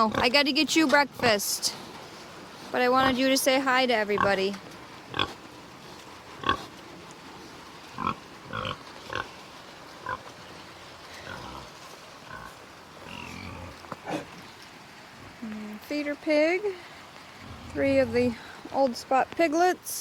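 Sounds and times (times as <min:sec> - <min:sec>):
rain hissing: 0:01.3 - 0:20.0
pig grunting: 0:06.4 - 0:06.7, 0:08.0 - 0:09.4, 0:11.2 - 0:14.4, 0:17.4 - 0:18.6.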